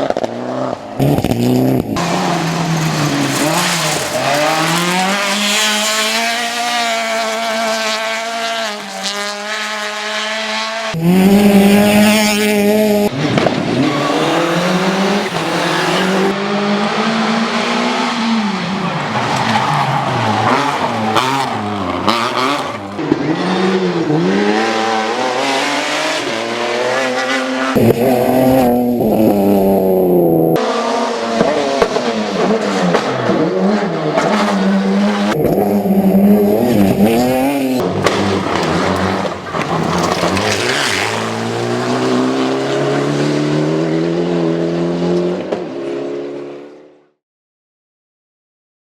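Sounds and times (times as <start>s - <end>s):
rally car engines revving: 0.0s - 47.0s.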